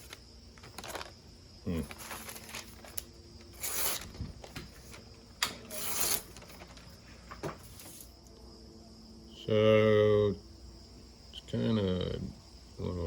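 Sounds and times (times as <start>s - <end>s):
blade scraping through paper: 3.6s - 4.2s, 5.7s - 6.6s.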